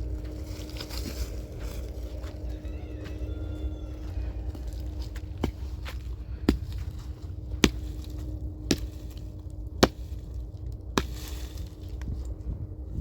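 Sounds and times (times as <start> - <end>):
rustle of wood: 0.0 - 2.6, 4.5 - 12.5
axe chopping firewood: 6.5 - 6.9, 7.6 - 9.2, 9.8 - 10.3, 10.9 - 11.7.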